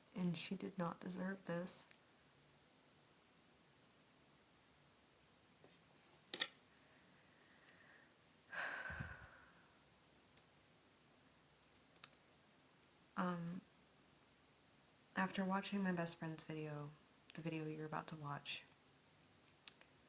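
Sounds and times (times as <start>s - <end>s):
faint clicks: 11.7s - 12.2s.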